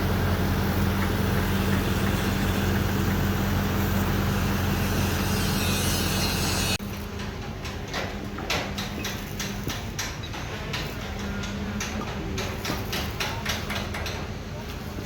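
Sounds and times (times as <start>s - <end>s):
large engine running: 0.0s - 6.8s.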